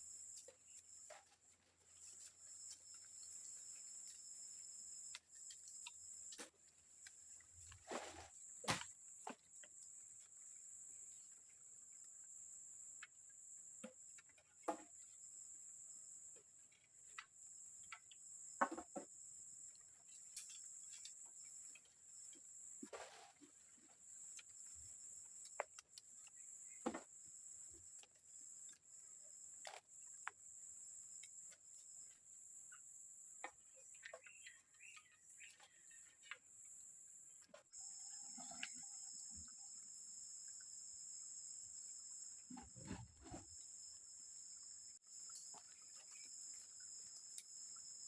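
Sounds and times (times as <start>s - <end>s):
insects droning: 0.0s - 48.0s
knocks and rustles of wood: 7.6s - 9.7s, 18.6s - 19.2s.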